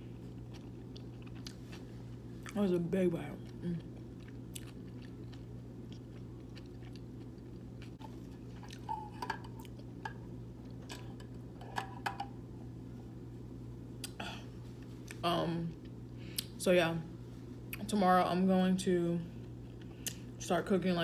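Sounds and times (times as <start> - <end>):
steady low hum: 0.0 - 21.0
person chewing food: 0.1 - 2.6, 3.4 - 11.2.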